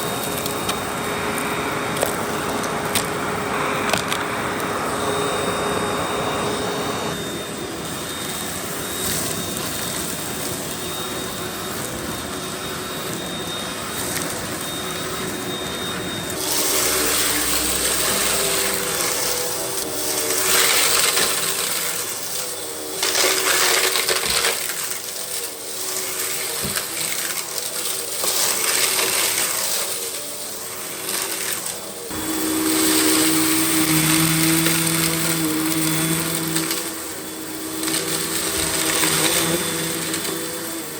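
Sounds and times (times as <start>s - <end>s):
vacuum cleaner motor running: 0.0s - 40.9s.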